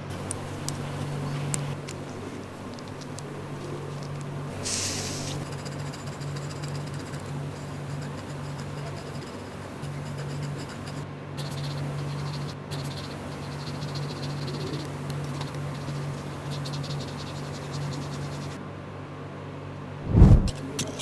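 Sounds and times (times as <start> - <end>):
tools scratching circuit board: 5.6 - 11.0.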